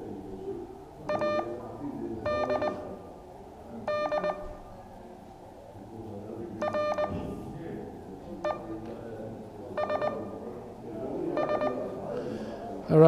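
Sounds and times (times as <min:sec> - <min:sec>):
morse code beeps: 0:01.1 - 0:01.6, 0:02.2 - 0:03.0, 0:03.9 - 0:04.6, 0:06.6 - 0:07.2, 0:08.4 - 0:08.8, 0:09.8 - 0:10.4, 0:11.4 - 0:12.0.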